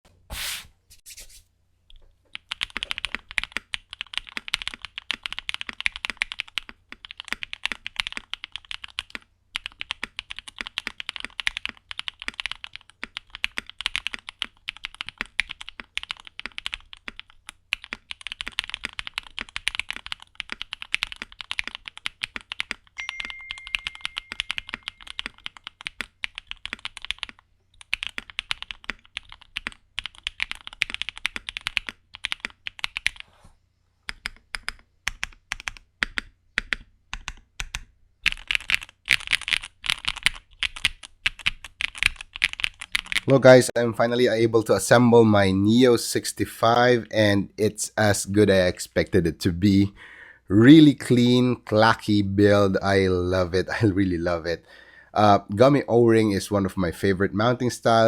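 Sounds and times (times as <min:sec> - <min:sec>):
mechanical keyboard typing: 0:02.3 - 0:33.2, 0:34.1 - 0:43.3.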